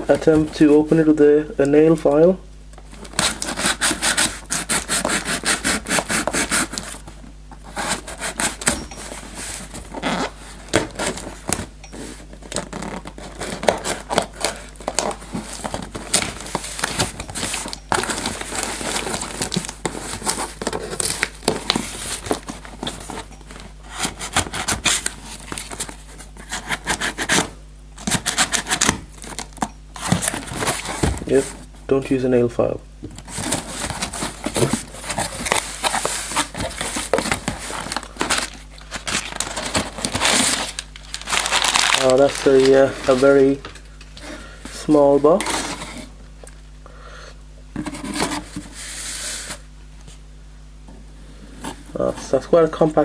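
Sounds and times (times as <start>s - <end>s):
nail file scraping a box: 3.1s - 7.0s, 7.6s - 10.4s, 12.6s - 29.4s.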